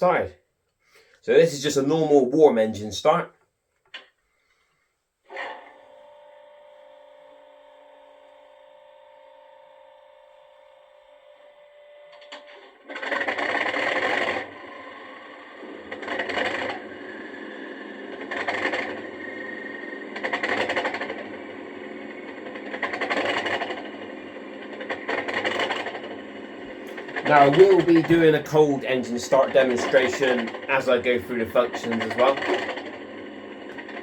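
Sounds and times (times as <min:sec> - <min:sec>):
faint hum: 0:05.6 - 0:34.0
model diesel engine sound: 0:12.2 - 0:34.0.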